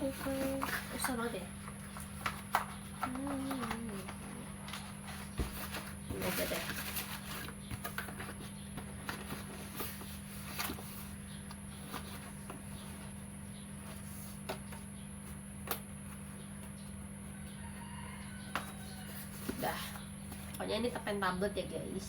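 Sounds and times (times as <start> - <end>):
steady electrical hum: 0.0 - 22.0.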